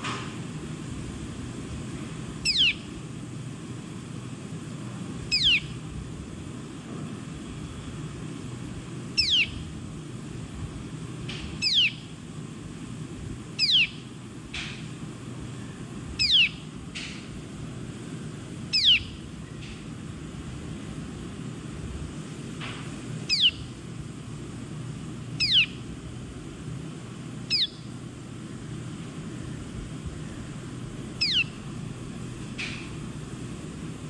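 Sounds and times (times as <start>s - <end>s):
bird whistling: 2.4s - 3.0s, 5.3s - 5.8s, 9.2s - 9.7s, 11.6s - 12.2s, 13.6s - 14.1s, 16.2s - 16.7s, 18.7s - 19.2s, 23.3s - 23.7s, 25.4s - 25.9s, 27.5s - 27.9s, 31.1s - 31.7s
low background rumble: 23.0s - 34.0s.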